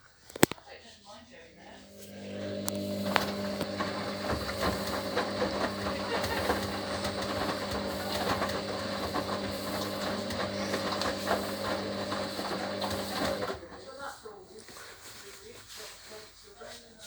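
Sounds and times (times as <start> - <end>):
washing machine motor hum: 1.6 - 14.3
laundry sloshing in drum: 2.3 - 13.9.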